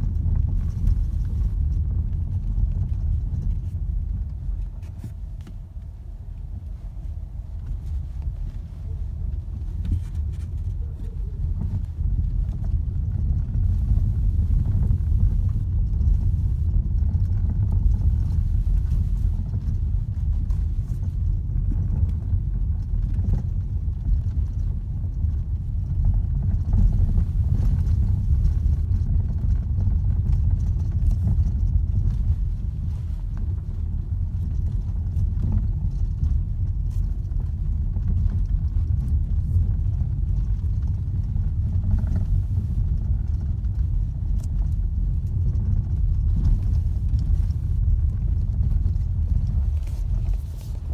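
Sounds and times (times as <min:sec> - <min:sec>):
low road rumble: 0:00.0 - 0:50.9.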